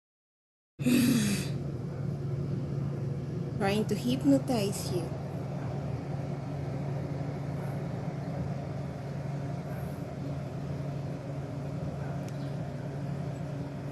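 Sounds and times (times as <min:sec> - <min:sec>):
low machine hum: 0:00.8 - 0:13.9.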